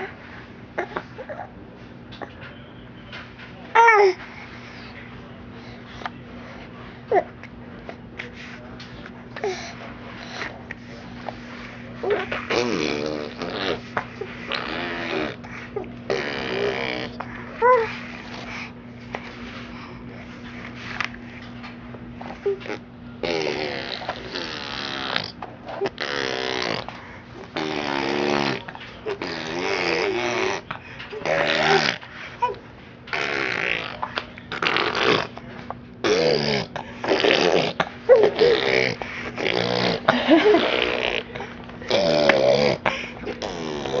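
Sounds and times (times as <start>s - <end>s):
baby vocalizing: 12.0s - 18.0s, 22.4s - 26.9s, 27.5s - 35.4s, 36.0s - 44.0s.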